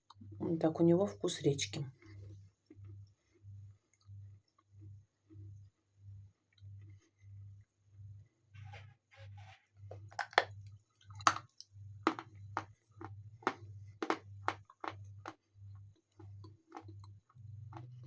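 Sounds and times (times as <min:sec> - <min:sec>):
chewing chalk crunches: 0:09.9 - 0:18.0.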